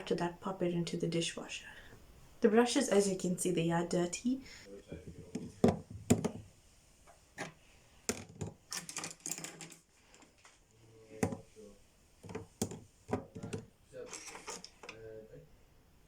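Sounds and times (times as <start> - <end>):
makeup brushes clicking and knocking: 5.1 - 6.5, 7.4 - 9.8, 11.2 - 11.5, 12.2 - 13.7.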